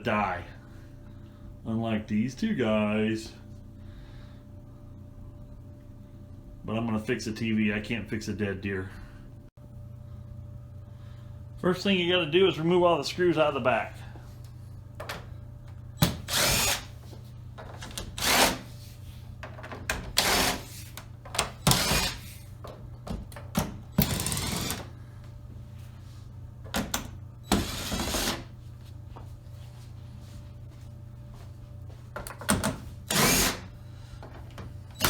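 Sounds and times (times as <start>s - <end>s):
power screwdriver whirring: 16.1s - 16.9s, 18.0s - 18.6s, 20.2s - 20.7s, 21.6s - 22.3s, 24.0s - 24.9s, 27.5s - 28.5s, 33.1s - 33.7s.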